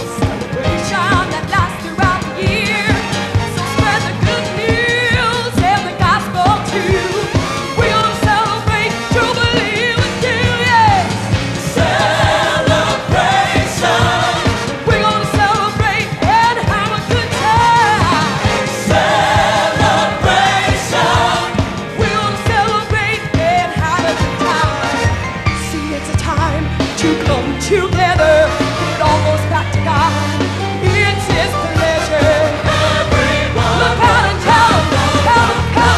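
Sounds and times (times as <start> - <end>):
band with steady beat: 0.0 - 35.9
church choir singing: 11.6 - 15.3, 17.9 - 22.7, 32.0 - 35.9.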